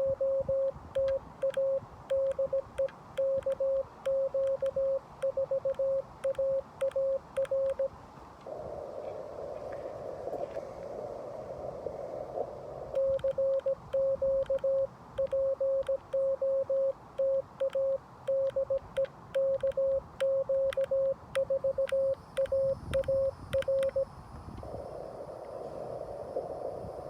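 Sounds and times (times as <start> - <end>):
morse code tone: 0.0 - 7.9, 13.0 - 24.1
radio receiver hiss: 0.0 - 16.8, 20.2 - 27.0.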